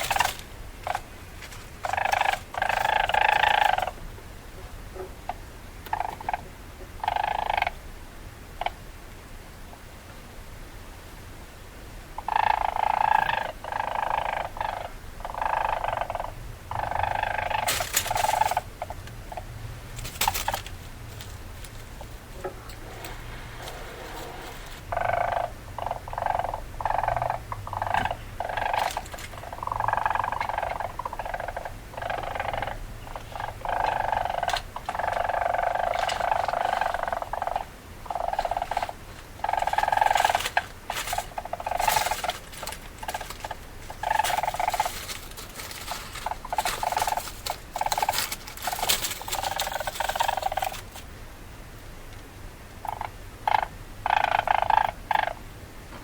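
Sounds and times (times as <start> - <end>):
weasel chattering: 0.0 - 1.1, 1.8 - 4.0, 12.2 - 51.0, 52.8 - 55.4.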